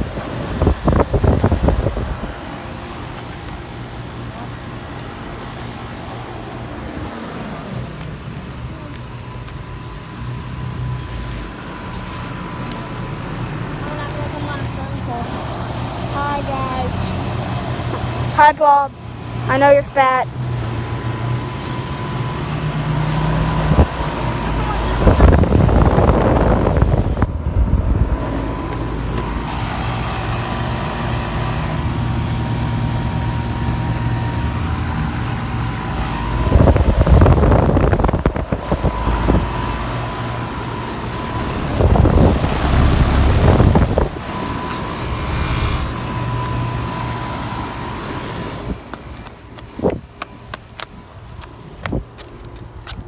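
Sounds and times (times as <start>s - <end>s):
air conditioner compressor hum: 0.0s - 52.8s
condenser fan: 0.0s - 53.0s
low rumbles: 22.9s - 29.7s, 31.6s - 47.8s.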